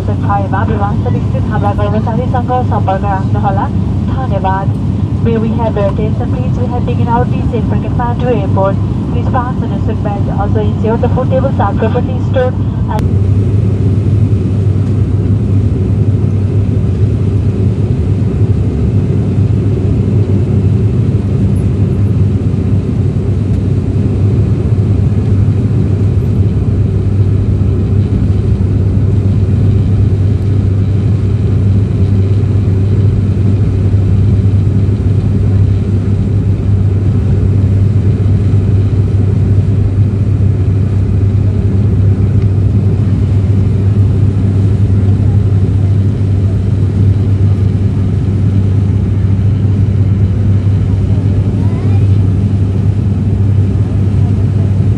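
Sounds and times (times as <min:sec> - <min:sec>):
propeller aircraft engine drone: 0:00.0 - 0:54.9
rush of air noise: 0:03.1 - 0:05.8.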